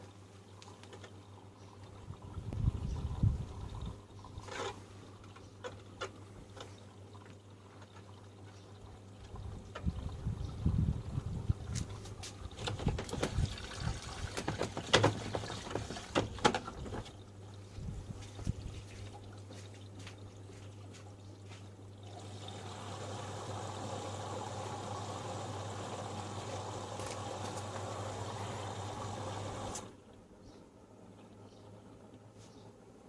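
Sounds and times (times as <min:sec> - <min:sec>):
knocks in washing machine: 0:14.4 - 0:16.7
water rushing: 0:22.0 - 0:29.9.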